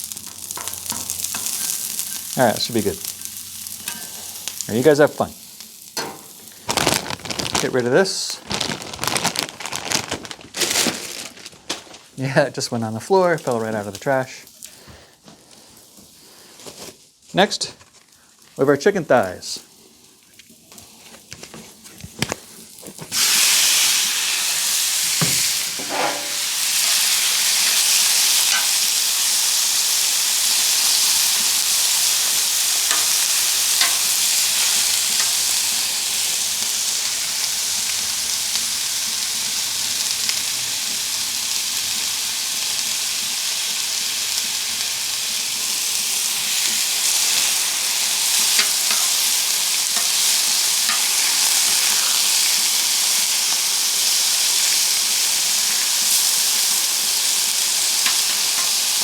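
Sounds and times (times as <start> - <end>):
chicken sizzling on a griddle: 0.0 - 6.8, 7.6 - 8.4, 12.2 - 59.0
oil popping and spattering: 6.5 - 7.8.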